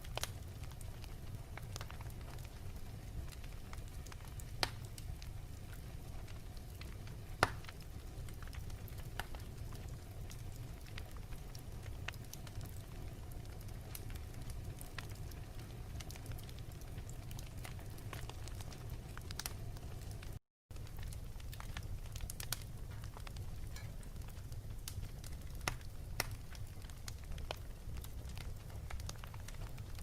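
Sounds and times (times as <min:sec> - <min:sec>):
wood fire crackling: 0:00.0 - 0:30.0
sharp pops of fire: 0:03.3 - 0:05.1, 0:05.7 - 0:11.1, 0:17.2 - 0:30.0.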